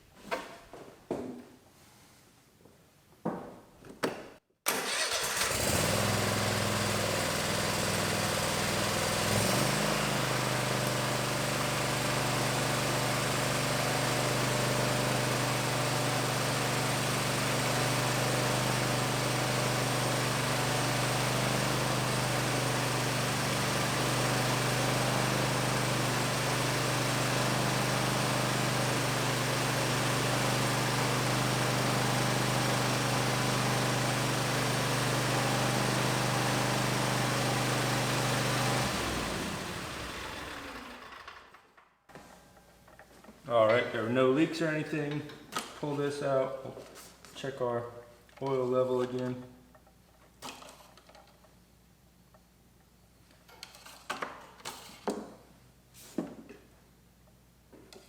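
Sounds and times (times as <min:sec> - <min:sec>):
mower engine running: 0:04.7 - 0:41.7.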